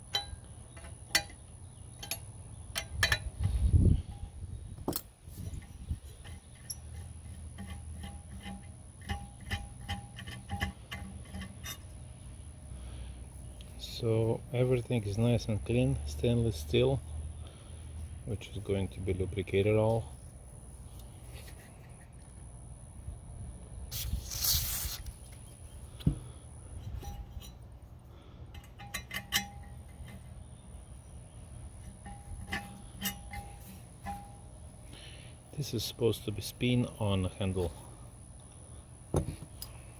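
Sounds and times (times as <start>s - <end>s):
small metal parts clicking: 0.0s - 12.0s, 28.5s - 30.4s
blow-torch hiss: 23.9s - 25.1s.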